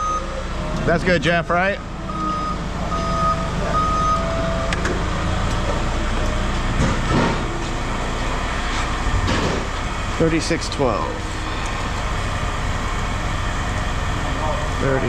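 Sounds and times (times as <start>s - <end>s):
reversing alarm beeps: 0.0s - 0.6s, 2.0s - 4.8s
vehicle engine humming: 0.0s - 15.0s.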